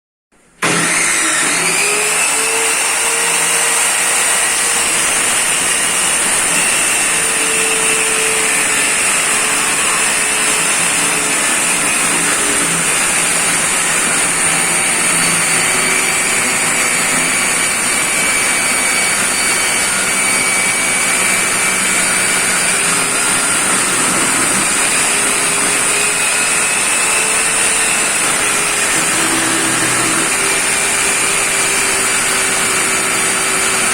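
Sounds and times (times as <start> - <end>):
circular saw motor whining: 0.6 - 33.9.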